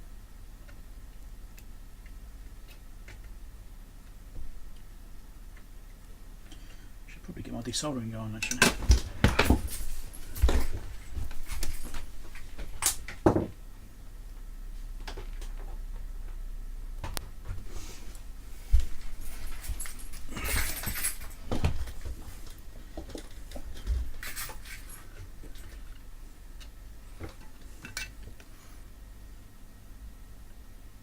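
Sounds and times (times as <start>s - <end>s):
tools clicking and rattling: 8.4s - 13.2s, 19.0s - 26.0s
scraping rustles: 8.7s - 12.8s.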